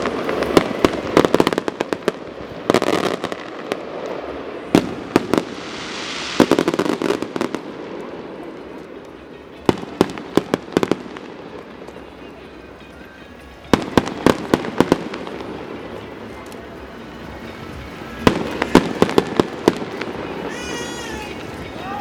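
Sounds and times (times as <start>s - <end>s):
firework rushing hiss: 0.0s - 8.9s
fireworks bangs and crackling: 0.0s - 22.0s.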